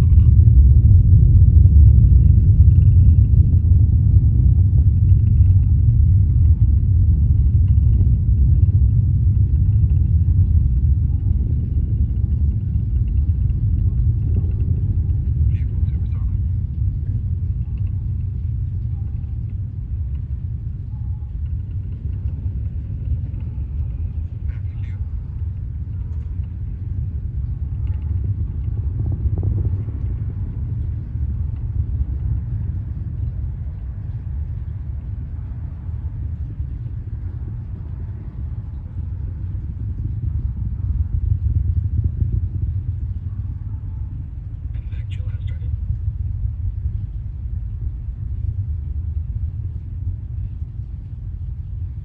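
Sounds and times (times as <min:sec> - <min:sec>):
distant rocket launch rumble: 0:00.0 - 0:52.0.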